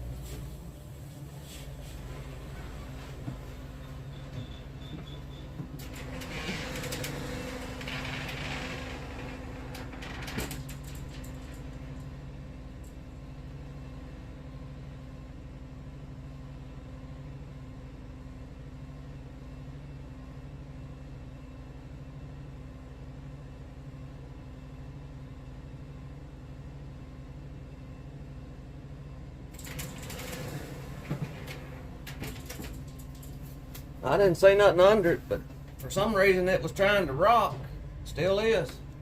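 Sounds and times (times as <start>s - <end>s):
rustling and clicking handling noise: 29.6s - 34.0s
sawmill engine humming: 30.4s - 39.0s.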